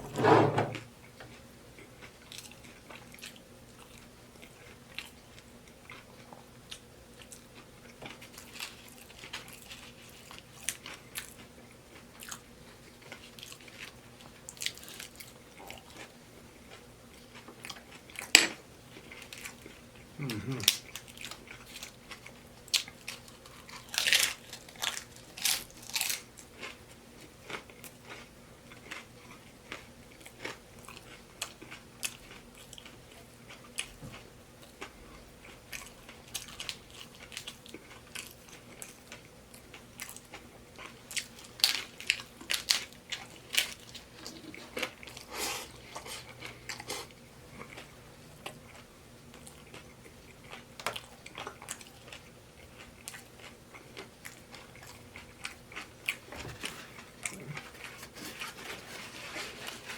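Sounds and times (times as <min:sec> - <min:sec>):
person chewing crunchy food: 0:01.3 - 0:59.9
crisp crunches of tortilla shell: 0:20.2 - 0:26.8, 0:40.1 - 0:44.5.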